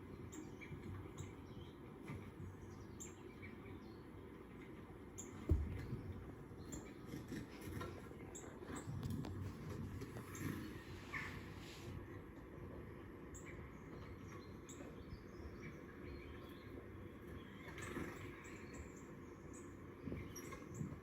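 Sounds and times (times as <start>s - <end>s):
small birds chirping: 0.0s - 12.2s, 12.9s - 21.0s
dull thump: 5.4s - 6.2s.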